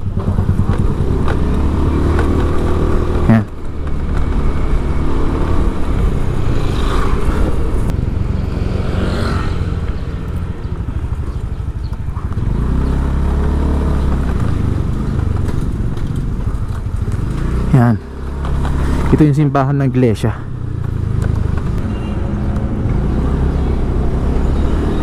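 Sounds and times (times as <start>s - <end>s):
motorcycle engine running: 0.0s - 25.0s
road and wind noise: 0.0s - 25.0s.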